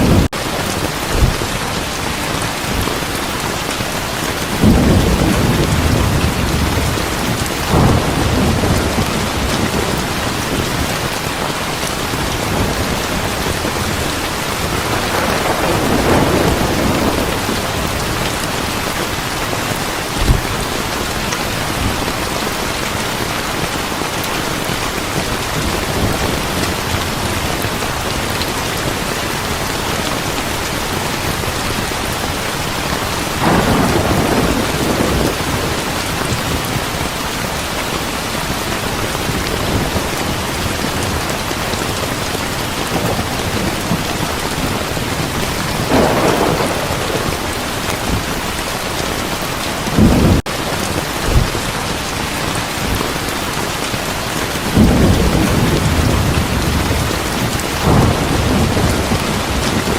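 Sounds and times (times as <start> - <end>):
thunder rolling: 0.0 - 3.2, 4.5 - 23.7, 33.0 - 37.1, 42.7 - 52.1, 54.6 - 59.9
heavy rain: 0.0 - 59.9.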